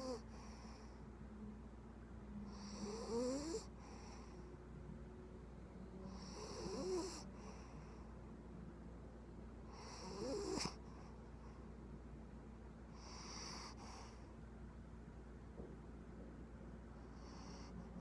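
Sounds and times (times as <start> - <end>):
puppy snoring: 0.0 - 1.0, 2.4 - 4.4, 5.9 - 8.0, 9.6 - 11.6, 12.9 - 14.2, 17.0 - 18.0.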